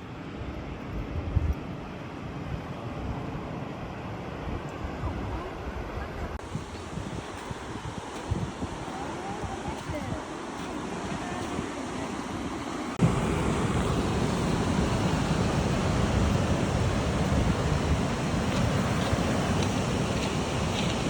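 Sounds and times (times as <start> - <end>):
ocean surf: 0.0 - 21.0
wind: 0.0 - 21.0
wind buffeting microphone: 4.4 - 21.0.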